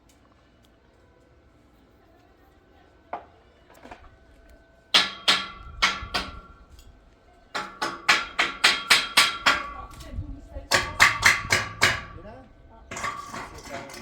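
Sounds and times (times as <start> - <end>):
hammer striking metal: 4.9 - 6.6, 7.6 - 9.8, 10.7 - 12.3.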